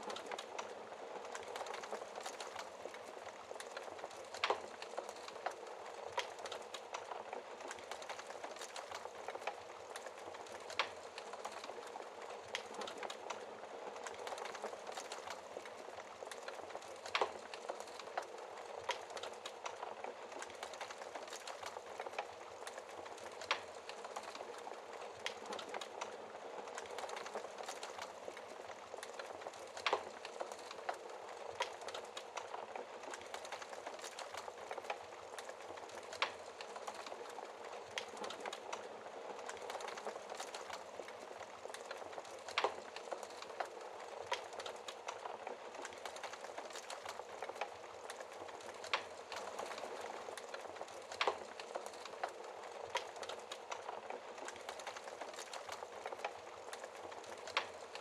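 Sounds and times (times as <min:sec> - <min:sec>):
fire crackling: 0:00.0 - 0:58.0.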